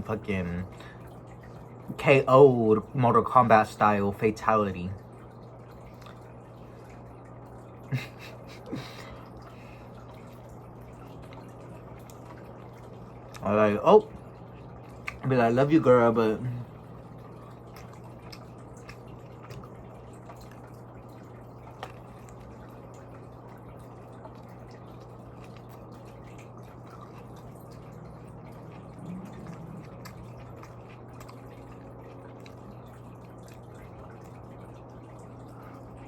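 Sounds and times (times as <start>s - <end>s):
steady low hum: 0.0s - 36.0s
wet mouth clicks: 15.0s - 15.2s, 28.6s - 32.7s
person chewing food: 17.3s - 36.0s.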